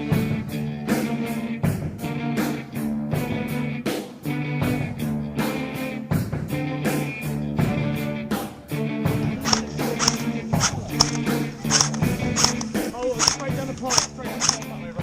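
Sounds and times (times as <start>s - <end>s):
steady drum beat: 9.4s - 15.0s.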